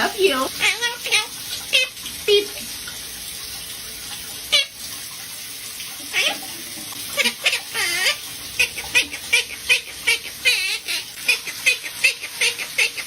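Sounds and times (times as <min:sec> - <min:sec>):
parrot chirping and warbling: 0:00.0 - 0:02.5, 0:04.5 - 0:04.8, 0:06.1 - 0:06.5, 0:07.1 - 0:13.0
water running from a tap: 0:00.0 - 0:13.0.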